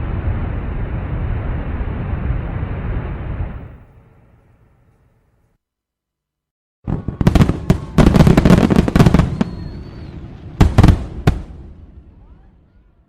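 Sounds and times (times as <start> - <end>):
fireworks bangs and crackling: 6.8 - 13.0.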